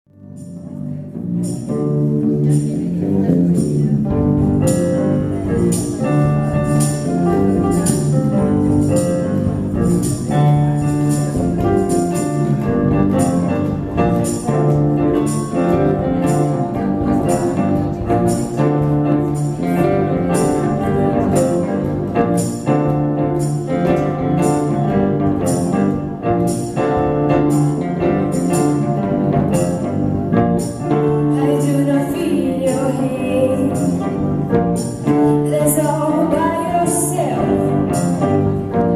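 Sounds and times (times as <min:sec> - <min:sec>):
acoustic rock band playing: 0:00.2 - 0:38.9.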